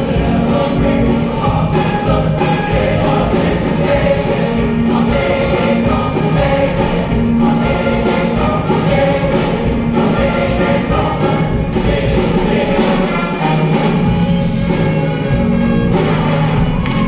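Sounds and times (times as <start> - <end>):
choir singing: 0.0 - 17.0
instrumental accompaniment with beat: 0.0 - 17.0.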